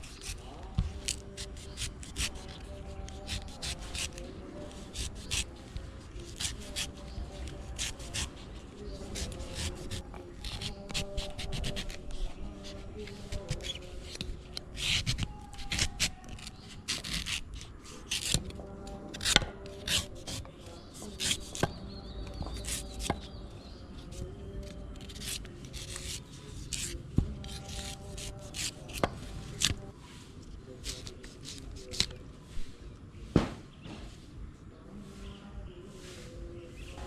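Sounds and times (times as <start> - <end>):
knife chopping coconut husk: 0.0 - 23.4, 24.1 - 29.9.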